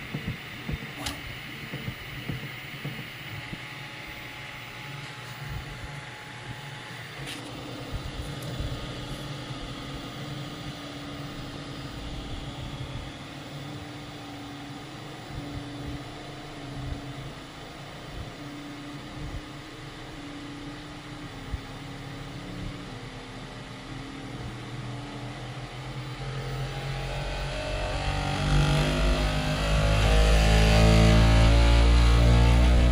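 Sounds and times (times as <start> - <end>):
stepper motors humming: 0.0 - 32.9.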